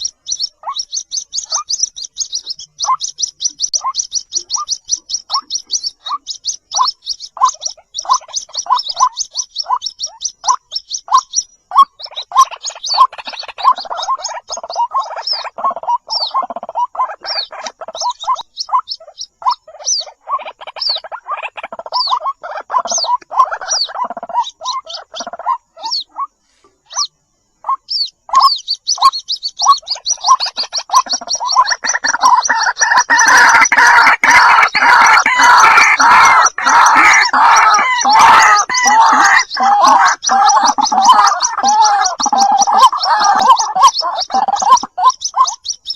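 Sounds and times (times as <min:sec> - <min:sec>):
bird high chirps: 0:00.0 - 0:45.9
bird rising croaks: 0:30.2 - 0:45.0.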